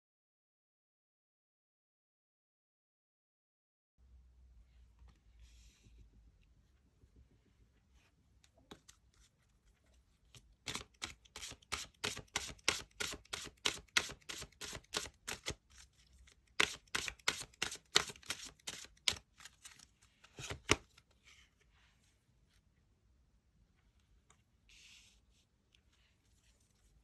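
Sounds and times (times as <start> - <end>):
cards being shuffled: 10.3 - 21.1.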